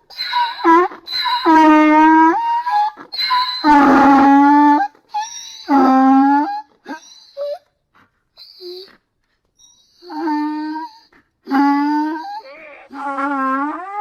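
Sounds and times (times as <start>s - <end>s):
donkey braying: 0.0s - 7.2s, 10.0s - 14.0s
donkey gasping breaths: 7.9s - 9.1s.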